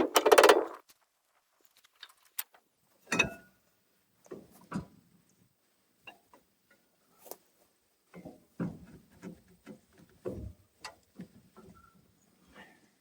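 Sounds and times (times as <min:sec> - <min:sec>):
hand tools clicking and knocking: 0:00.0 - 0:00.8.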